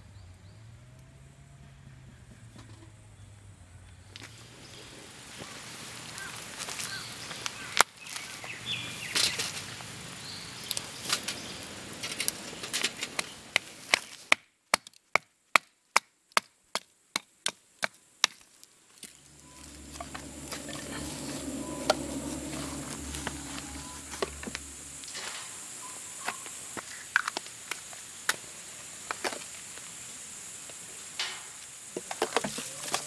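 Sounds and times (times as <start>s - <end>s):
wood being chopped: 13.5s - 18.5s
steady low hum: 19.1s - 26.2s.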